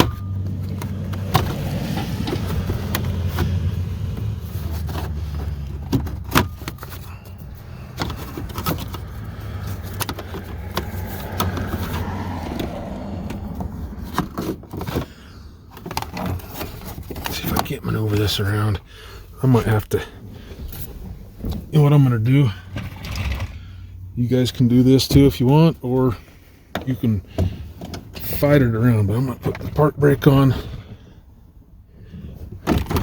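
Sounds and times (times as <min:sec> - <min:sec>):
plastic trim clicking and rattling: 0:00.0 - 0:12.0.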